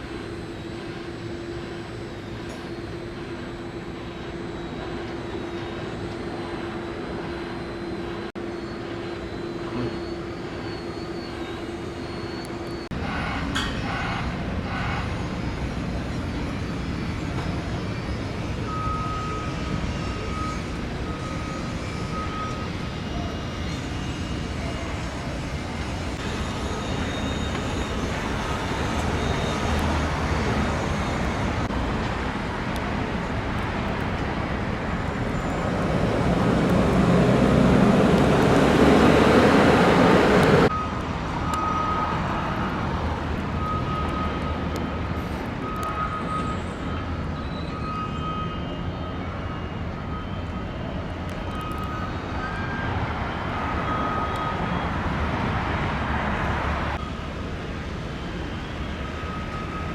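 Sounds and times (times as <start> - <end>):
traffic noise: 0.0 - 59.9
faint electronic beep: 7.6 - 12.9, 17.4 - 23.5
vehicle rushing past: 34.4 - 40.7.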